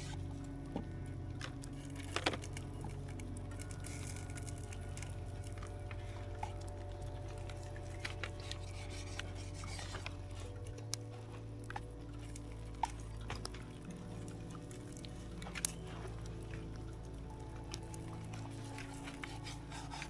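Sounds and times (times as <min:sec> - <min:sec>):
soft background music: 0:00.0 - 0:20.0.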